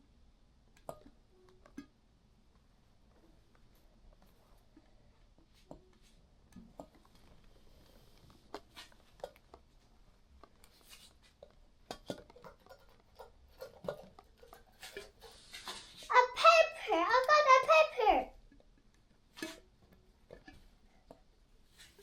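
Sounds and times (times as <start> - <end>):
small objects clicking and tapping: 0.7 - 2.0, 8.2 - 16.1.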